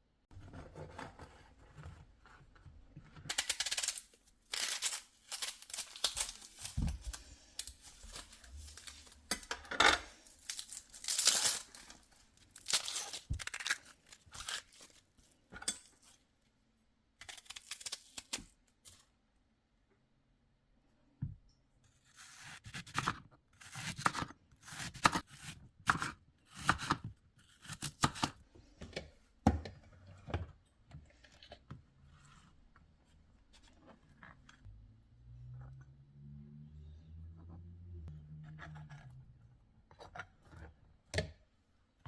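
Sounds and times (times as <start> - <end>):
food tearing and crinkling: 3.2 - 9.3, 10.1 - 15.4, 17.2 - 19.1.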